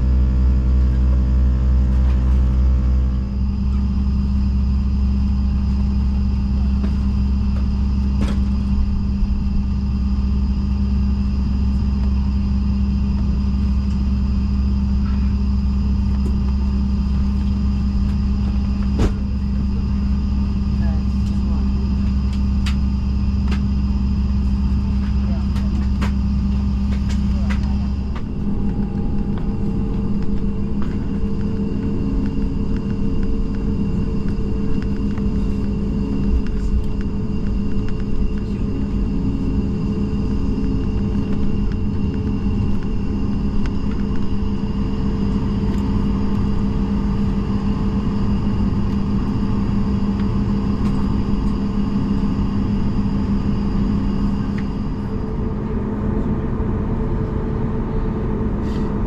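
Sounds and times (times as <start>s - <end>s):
faint high engine whines: 0.0s - 59.0s
jet engines rumbling in cabin: 0.0s - 59.0s.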